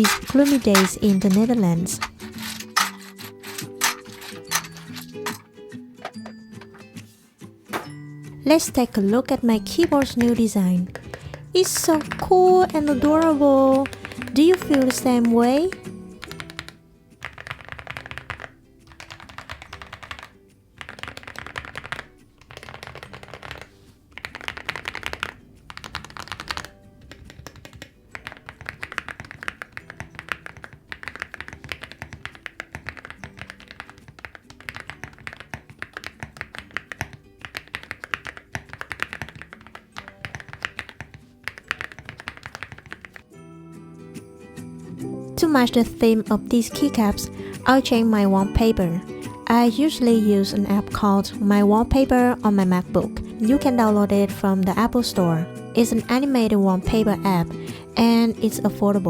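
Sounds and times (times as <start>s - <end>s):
mechanical keyboard typing: 0.0s - 5.1s, 9.7s - 43.3s
soft background music: 0.0s - 59.0s.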